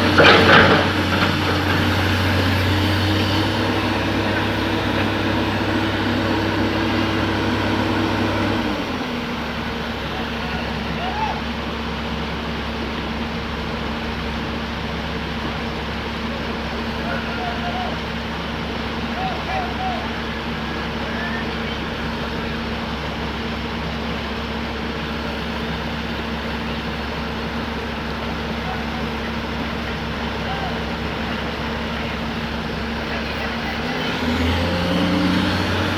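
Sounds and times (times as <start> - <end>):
diesel machinery engine running: 0.0 - 35.9.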